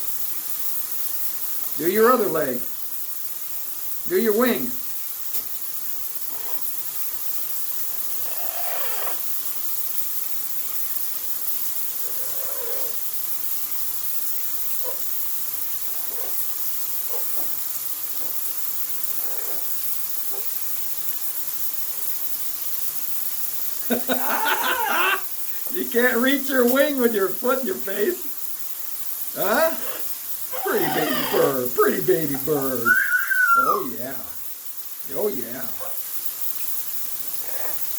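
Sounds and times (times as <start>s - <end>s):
shower water spraying: 0.0s - 37.9s
person speaking: 23.9s - 28.4s, 29.3s - 34.4s, 35.0s - 35.9s.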